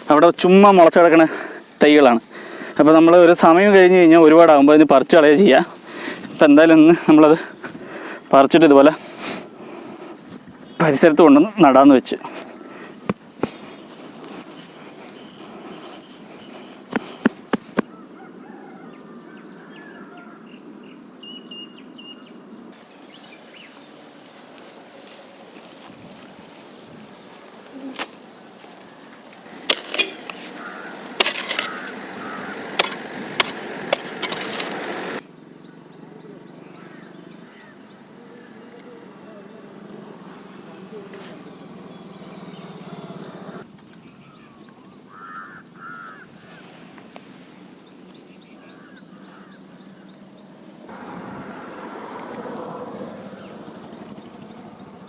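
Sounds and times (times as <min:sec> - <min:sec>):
tool scraping dry soil: 0:12.1 - 0:17.9, 0:27.9 - 0:35.2
loud rough noise: 0:29.5 - 0:35.2, 0:50.9 - 0:52.6
digging tool knocking into soil: 0:29.6 - 0:32.0, 0:32.8 - 0:34.9
crow cawing: 0:29.7 - 0:34.5, 0:36.6 - 0:37.9, 0:44.4 - 0:46.8, 0:48.6 - 0:50.0.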